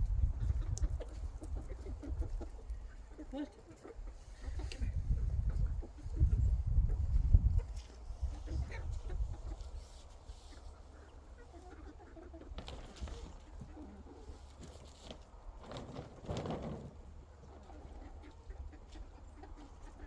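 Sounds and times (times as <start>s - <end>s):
chickens clucking softly: 0.0s - 20.0s
rustling: 7.6s - 18.1s.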